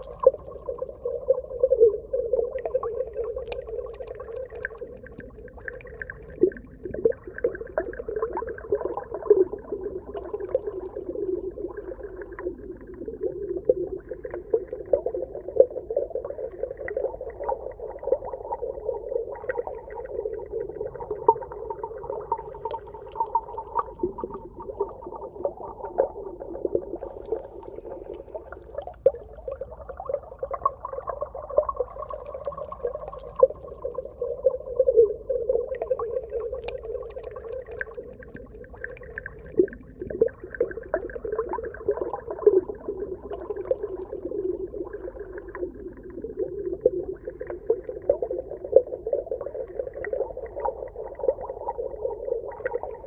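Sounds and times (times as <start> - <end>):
low underwater hum: 0.0 - 53.0
small crackling clicks: 3.4 - 5.3, 36.5 - 38.5.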